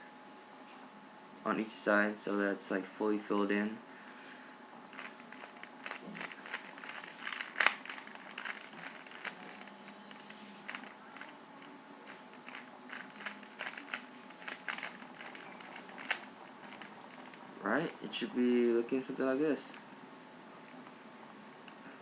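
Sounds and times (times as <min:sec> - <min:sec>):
puzzle cube clicking and rattling: 0:04.9 - 0:17.4.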